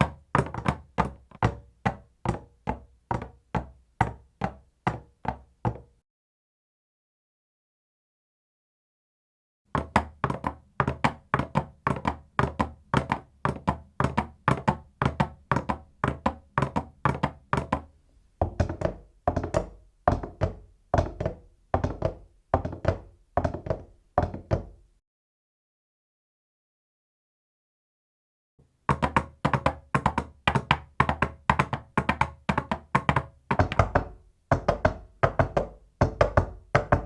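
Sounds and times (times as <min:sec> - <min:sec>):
coconut shells tapped as hooves: 0:00.0 - 0:05.9, 0:09.8 - 0:24.7, 0:28.9 - 0:37.0.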